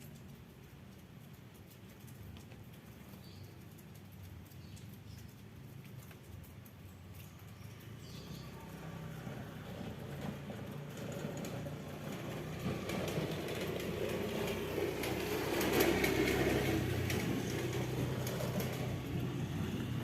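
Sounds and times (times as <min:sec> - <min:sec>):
vehicle engine passing by: 0:07.8 - 0:20.0.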